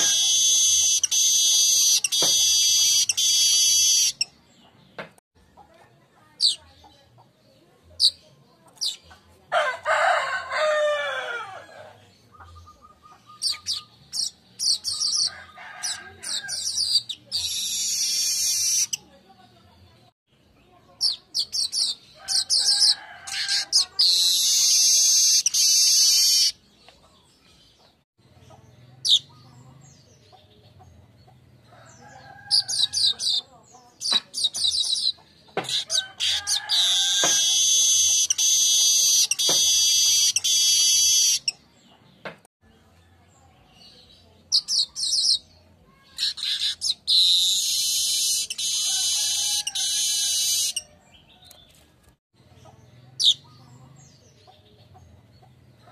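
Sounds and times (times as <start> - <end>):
weaver bird singing: 0.0 - 5.1, 12.1 - 19.1, 20.0 - 51.8.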